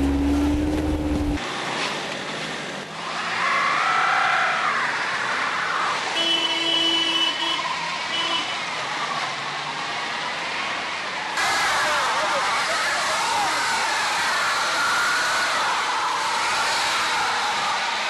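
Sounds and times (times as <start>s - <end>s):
rising and falling whine: 0.0s - 1.4s
cars in traffic: 0.0s - 18.0s
car horn: 6.2s - 8.6s.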